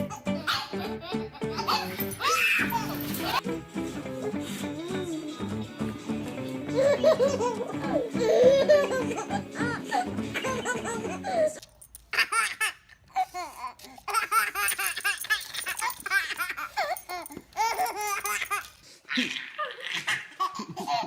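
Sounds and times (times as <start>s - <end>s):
baby giggling: 0.0s - 3.4s, 6.7s - 11.6s, 12.2s - 21.0s.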